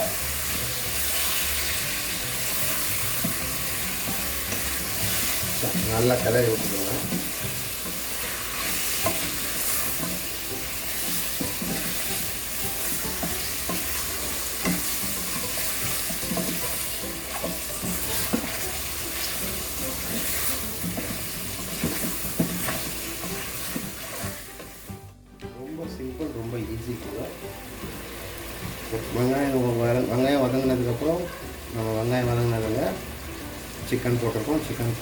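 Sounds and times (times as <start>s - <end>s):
chicken frying in oil: 0.0s - 24.5s
spoon scraping and knocking pan: 0.0s - 24.9s.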